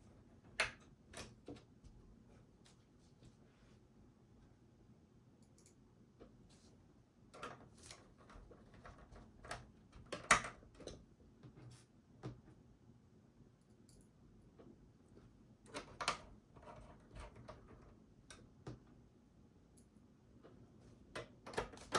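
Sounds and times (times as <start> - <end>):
computer parts clicking and tapping: 7.4 - 11.0, 15.7 - 18.5.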